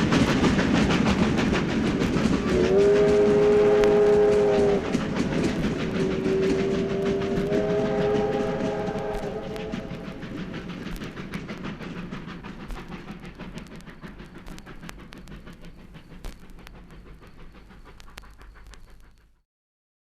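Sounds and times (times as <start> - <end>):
train running on rails: 0.0 - 19.4.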